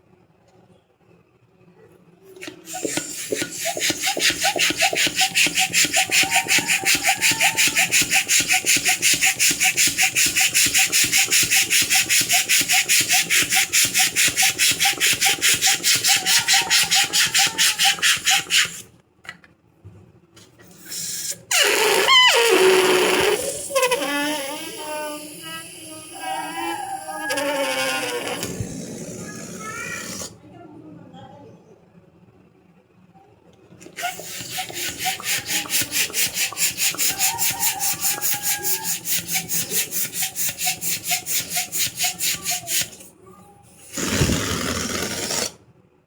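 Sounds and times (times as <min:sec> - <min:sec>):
hand balloon pump pumping: 0:02.4 - 0:18.9, 0:20.7 - 0:30.4, 0:33.8 - 0:43.2, 0:43.8 - 0:45.6.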